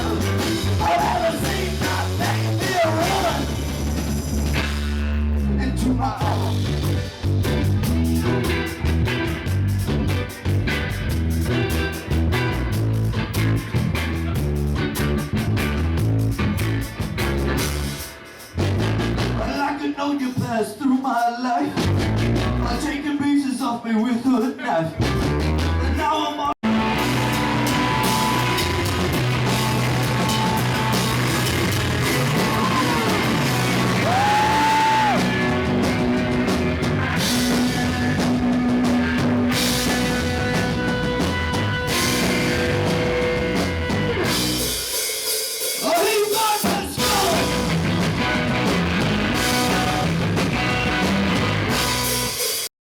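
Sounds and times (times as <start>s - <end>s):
person singing: 0.0s - 3.6s, 26.6s - 36.4s, 37.0s - 44.3s, 45.8s - 47.7s
rock band playing live: 0.0s - 19.6s, 26.6s - 52.7s
drum kit: 0.0s - 19.7s, 21.7s - 22.8s, 26.6s - 52.7s.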